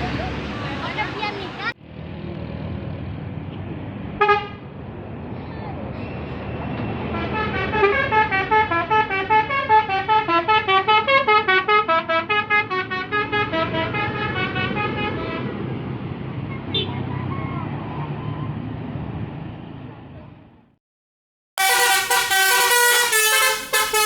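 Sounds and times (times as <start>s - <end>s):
engine and road noise: 0.0s - 20.8s, 21.6s - 24.0s
bus musical horn tune: 4.2s - 4.6s, 7.0s - 15.7s, 21.6s - 24.0s.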